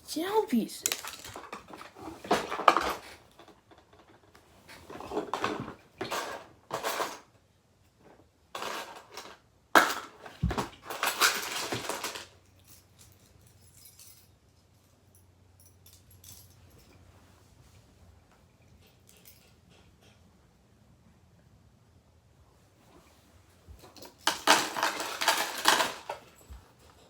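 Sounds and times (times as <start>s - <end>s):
small hard objects clattering: 0.6s - 3.1s, 23.9s - 26.4s.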